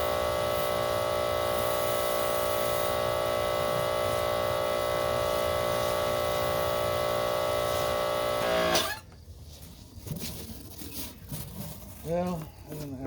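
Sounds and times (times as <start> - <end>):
pressure washer motor humming: 0.0 - 9.0.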